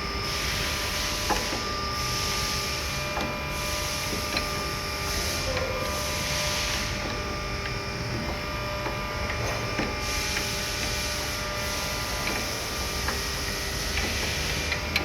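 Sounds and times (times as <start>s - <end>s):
mechanical hum and hiss: 0.0s - 15.0s.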